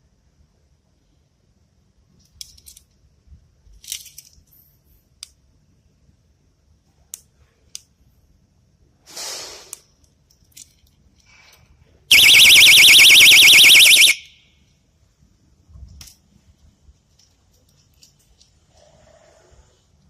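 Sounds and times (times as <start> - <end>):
alarm warbling siren tone: 12.1 - 14.4.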